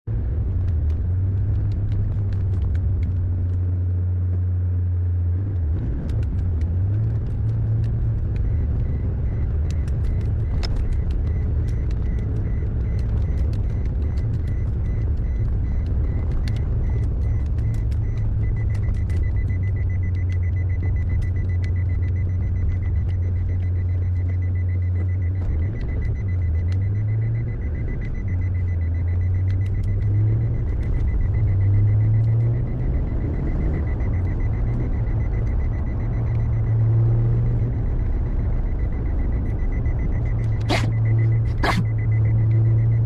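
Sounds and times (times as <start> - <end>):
high-pitched warning beep: 8.5 - 43.0.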